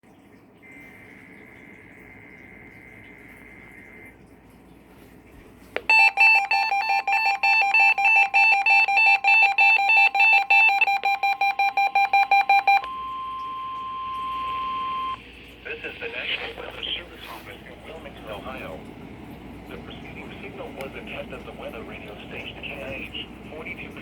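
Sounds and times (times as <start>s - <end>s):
faint steady electronic tone: 0.6s - 4.8s, 5.8s - 24.0s
pulsing electronic beeping alarm: 5.9s - 15.2s.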